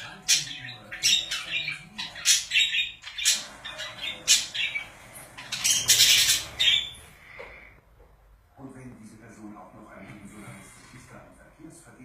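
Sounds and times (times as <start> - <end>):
budgerigars squawking: 0.0 - 7.4.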